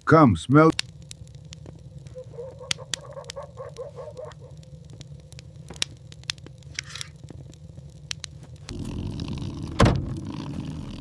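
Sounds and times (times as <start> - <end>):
sharp crackles and pops: 0.0 - 11.0
hissy scrape: 6.6 - 7.2.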